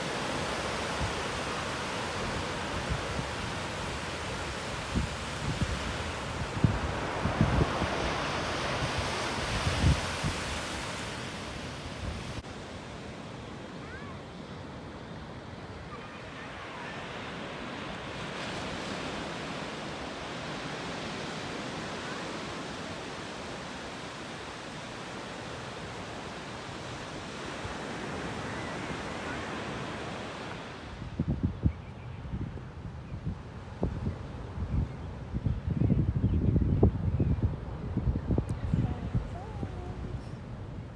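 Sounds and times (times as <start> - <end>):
wind buffeting the microphone: 0.0 - 12.4, 30.8 - 40.9
wind or surf rushing: 0.0 - 40.9.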